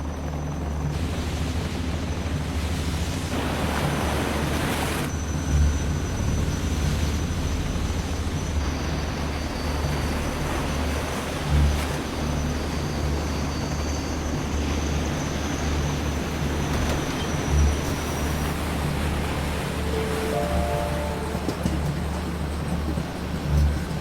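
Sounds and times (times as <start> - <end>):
low engine rumble: 5.1 - 24.0.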